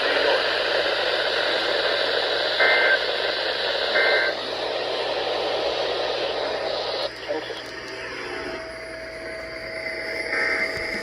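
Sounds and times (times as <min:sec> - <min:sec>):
radio static hissing: 0:00.0 - 0:11.0
data tone bursts: 0:02.4 - 0:07.6, 0:08.4 - 0:11.0.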